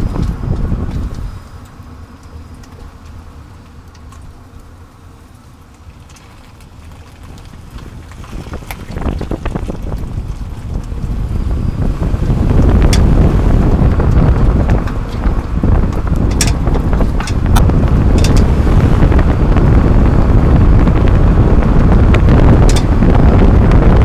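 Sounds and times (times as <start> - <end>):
road tyre and wind noise: 0.0 - 24.0
sharp clicks and knocks: 13.9 - 18.5, 22.1 - 23.0.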